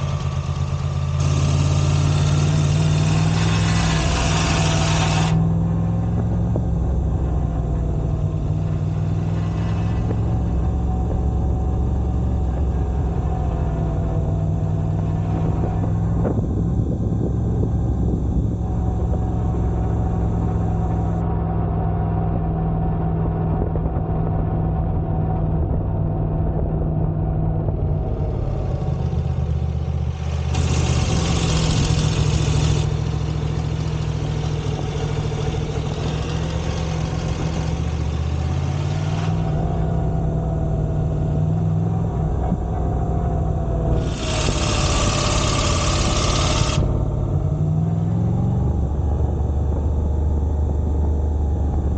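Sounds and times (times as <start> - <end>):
motorcycle engine running: 0.0 - 51.9
loose exhaust cover vibrating: 41.6 - 48.3.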